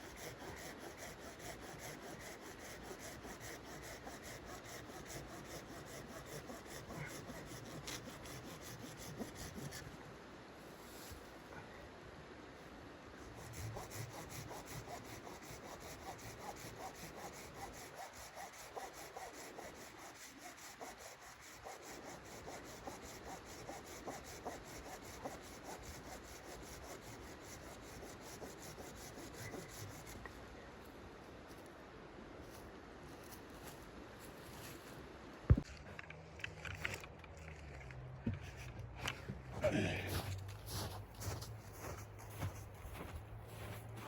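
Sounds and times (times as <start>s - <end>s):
hand saw cutting wood: 0.0s - 9.9s, 13.3s - 30.2s.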